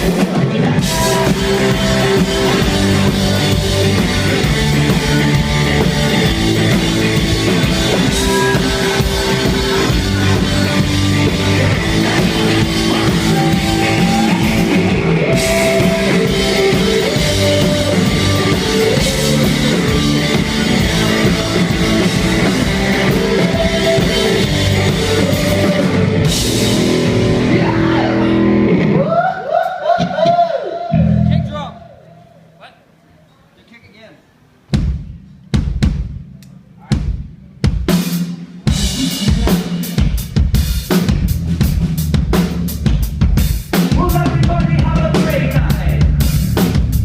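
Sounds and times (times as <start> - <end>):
bass guitar: 0.0 - 29.2, 30.1 - 31.9, 38.7 - 47.0
electric guitar: 0.0 - 29.3
drum kit: 0.0 - 31.6, 34.6 - 47.0.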